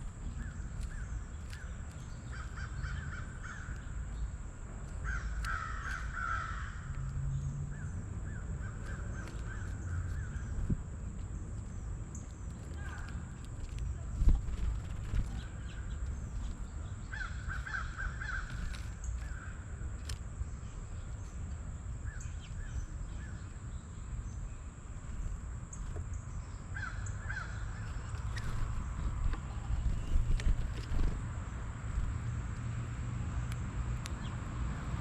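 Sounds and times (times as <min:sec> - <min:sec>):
wild birds calling: 0:00.0 - 0:10.8, 0:11.7 - 0:19.8, 0:25.7 - 0:31.3
steady low rumble: 0:00.0 - 0:34.6.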